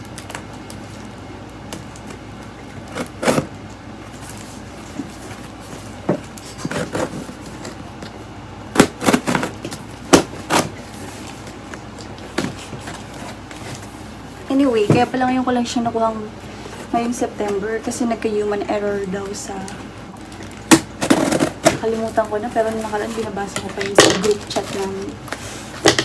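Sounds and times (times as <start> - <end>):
cardboard rustling: 8.9 - 15.3, 20.2 - 26.0.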